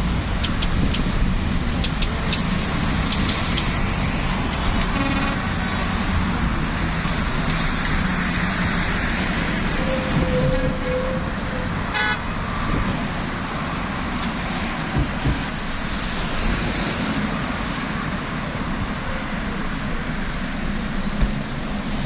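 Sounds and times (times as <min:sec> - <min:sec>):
highway traffic: 0:00.0 - 0:22.0
car horn: 0:04.8 - 0:05.6, 0:09.8 - 0:12.3.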